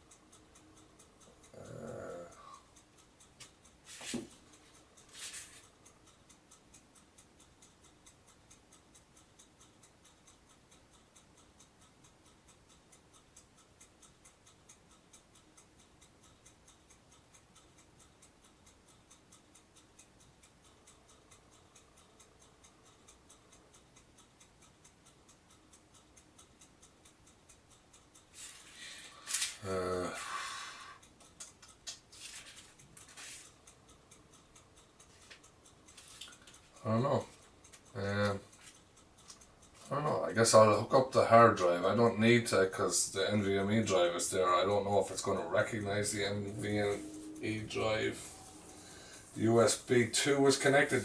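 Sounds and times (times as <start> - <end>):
faint even ticking: 0.0 - 51.0
cables being handled clicks: 23.0 - 29.8, 31.0 - 39.9.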